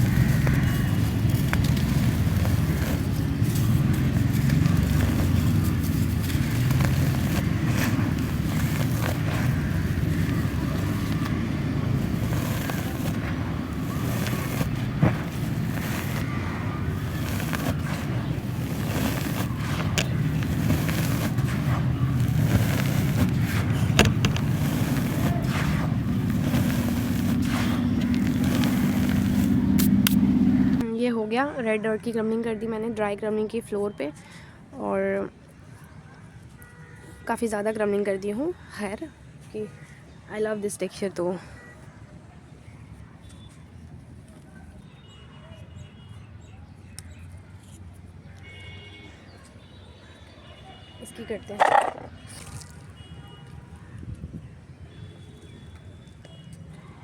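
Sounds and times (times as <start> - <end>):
dry clay crunching by hand: 0.0 - 30.8, 51.5 - 53.0
steady low rumble: 0.0 - 30.8.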